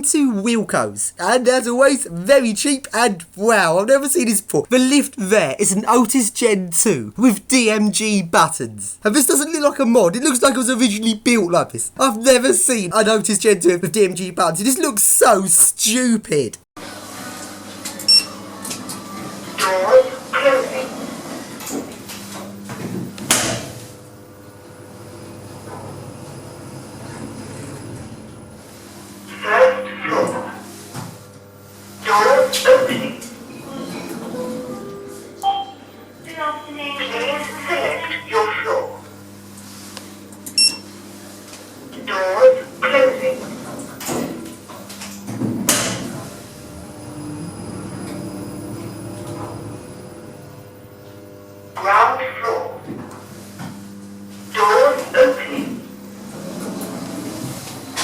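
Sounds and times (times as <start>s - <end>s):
lift car humming: 46.2s - 50.8s.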